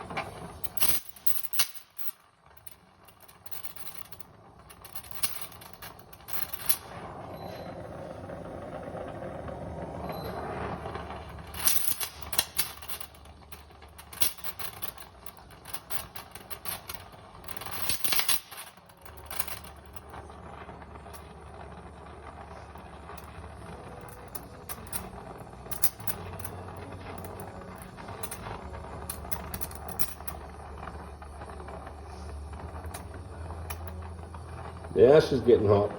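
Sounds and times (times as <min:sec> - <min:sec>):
torch flame hissing: 0:06.8 - 0:11.5, 0:30.4 - 0:35.9.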